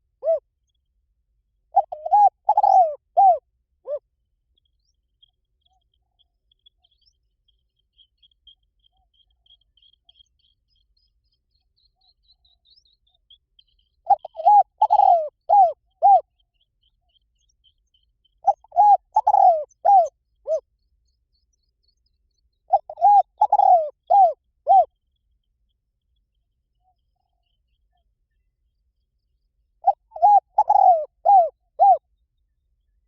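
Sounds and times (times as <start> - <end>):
dove cooing: 0.2 - 0.4, 1.7 - 4.0, 14.0 - 16.3, 18.4 - 20.6, 22.7 - 24.9, 29.8 - 32.0.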